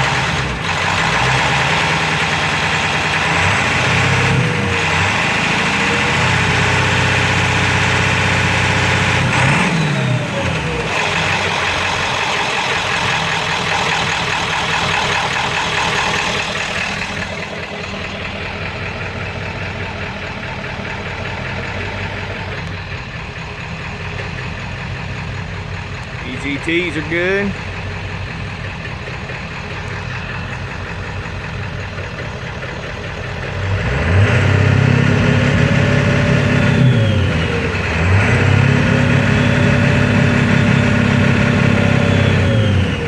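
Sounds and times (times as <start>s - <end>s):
diesel engine idling roughly: 0.0s - 43.0s.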